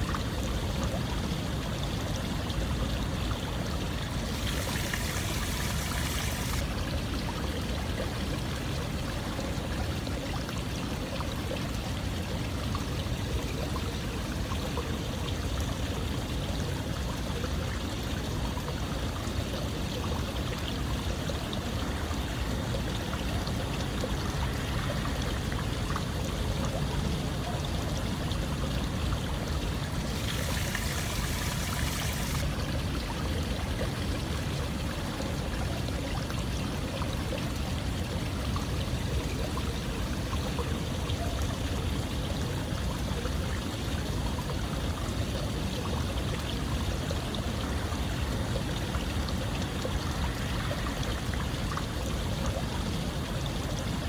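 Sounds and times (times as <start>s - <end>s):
running water rushing: 0.0s - 16.2s, 19.0s - 42.2s.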